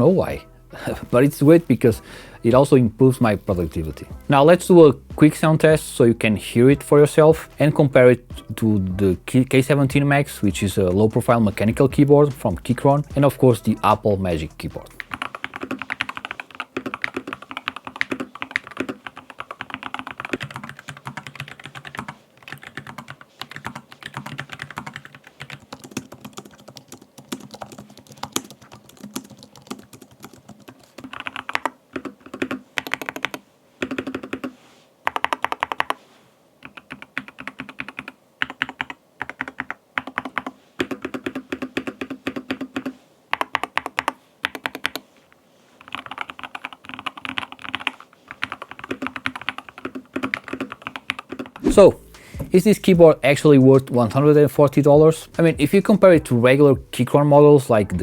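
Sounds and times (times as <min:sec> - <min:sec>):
typing on computer keyboards: 0:15.0 - 0:36.0, 0:36.6 - 0:45.1, 0:45.8 - 0:51.7.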